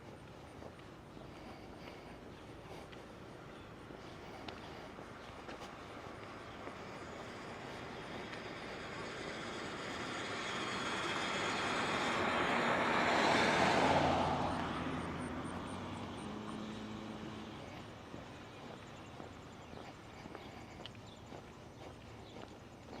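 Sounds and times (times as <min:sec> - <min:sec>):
motor vehicle passing by: 0:00.0 - 0:23.0.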